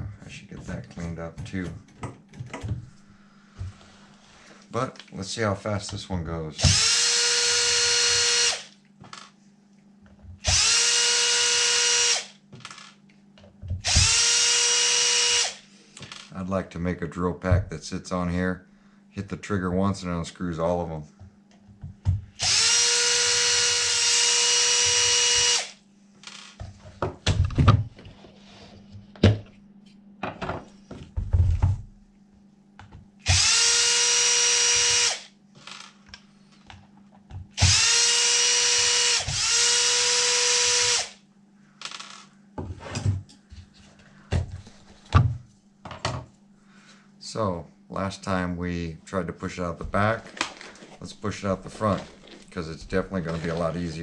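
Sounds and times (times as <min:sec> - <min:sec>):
cordless drill whining: 0:06.6 - 0:08.8, 0:10.4 - 0:12.9, 0:13.8 - 0:16.3, 0:22.4 - 0:26.6, 0:33.2 - 0:36.0, 0:37.6 - 0:41.2.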